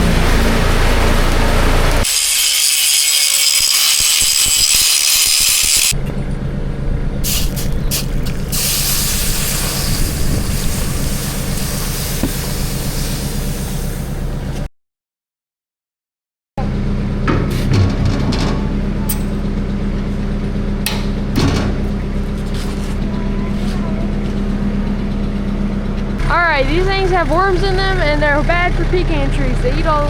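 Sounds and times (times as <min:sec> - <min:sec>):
engine running steadily: 0:05.6 - 0:14.7, 0:16.6 - 0:30.0.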